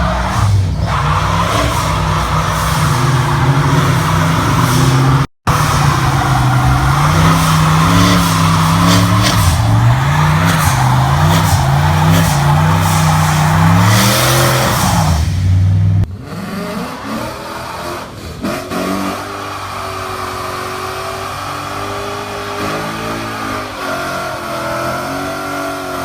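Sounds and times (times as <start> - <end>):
tyres squealing: 0.0 - 15.6
quieter engine revving: 0.0 - 25.8
car engine at high revs: 0.0 - 26.0.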